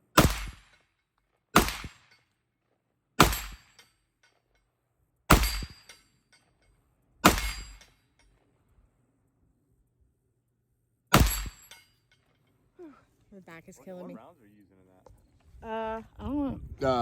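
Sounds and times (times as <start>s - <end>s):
rifle shots: 0.1s - 0.8s, 1.6s - 2.1s, 3.2s - 3.8s, 5.3s - 5.9s, 7.2s - 7.8s, 11.1s - 11.7s
bullet striking steel target: 0.1s - 0.9s, 1.5s - 2.3s, 3.2s - 4.5s, 5.3s - 8.4s, 11.1s - 12.3s.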